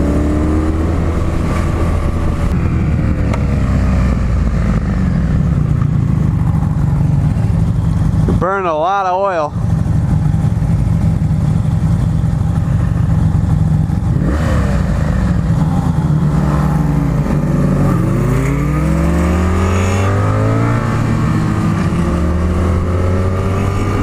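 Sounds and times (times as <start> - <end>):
wind rush on microphone: 0.0 - 5.3
motorcycle engine accelerating: 0.0 - 24.0.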